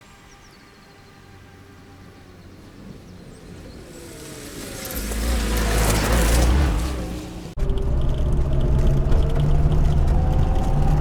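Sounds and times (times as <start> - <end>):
car engine running: 4.9 - 11.0.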